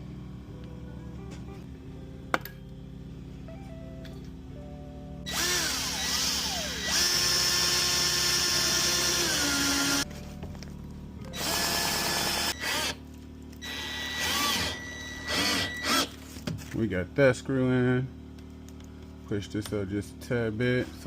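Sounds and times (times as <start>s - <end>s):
background music: 0.0s - 6.9s
power drill driving screw: 5.3s - 10.0s, 11.4s - 13.0s, 13.6s - 16.1s.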